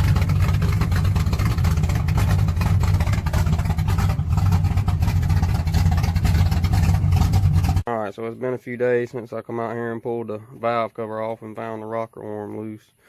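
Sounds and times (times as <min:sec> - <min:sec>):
engine idling: 0:00.0 - 0:07.9.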